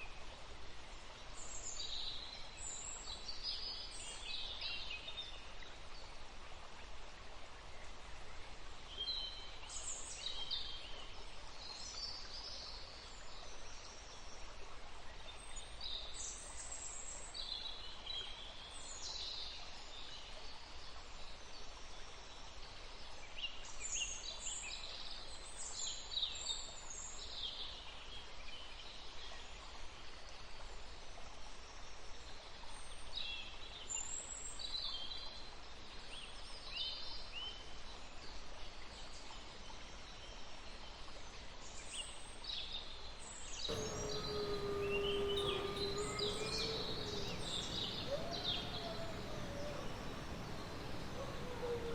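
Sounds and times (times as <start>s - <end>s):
bird calls: 43.7s - 51.9s
steady background hiss: 43.7s - 51.9s.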